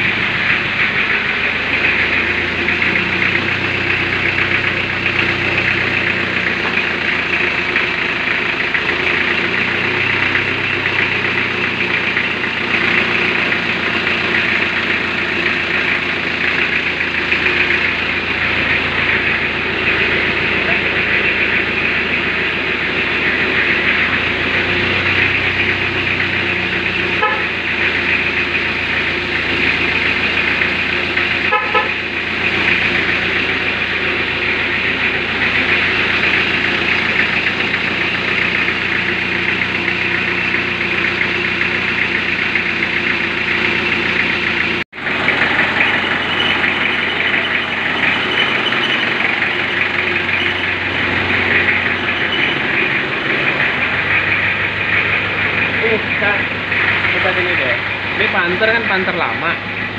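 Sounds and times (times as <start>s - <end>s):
diesel engine idling: 0.0s - 59.9s.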